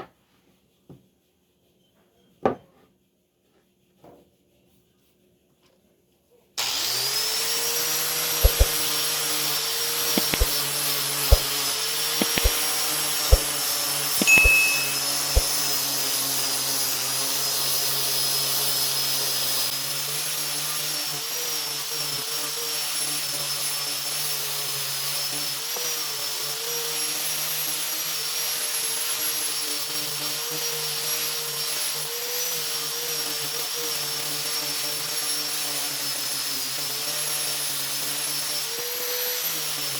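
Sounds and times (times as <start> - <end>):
sharp knocks: 8.4 - 8.8, 10.2 - 10.6, 12.2 - 12.6, 13.3 - 13.5, 14.2 - 15.6.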